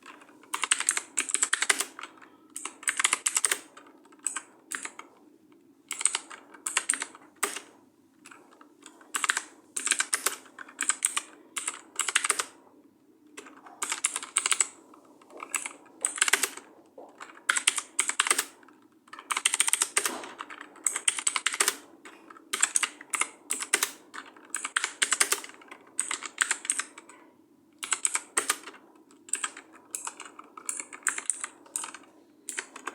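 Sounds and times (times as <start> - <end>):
computer keyboard typing: 0.0 - 5.2, 5.9 - 12.6, 13.3 - 32.9.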